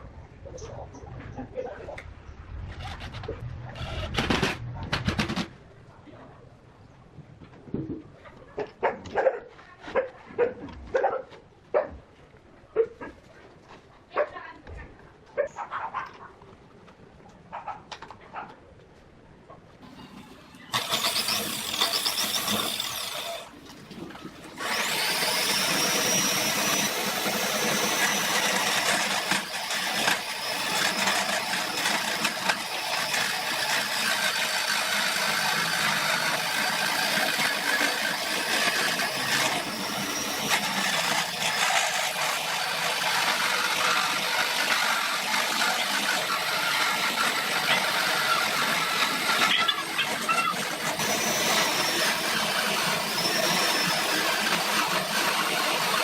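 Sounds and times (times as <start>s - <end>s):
electric power tool grinding: 2.7s - 5.4s, 19.8s - 23.6s, 24.6s - 56.0s.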